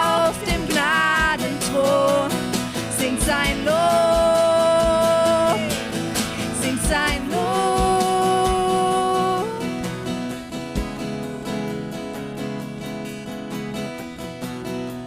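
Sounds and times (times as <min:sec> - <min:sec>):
person singing long notes: 0:00.0 - 0:05.8, 0:06.4 - 0:09.9
worship band music: 0:00.0 - 0:14.0.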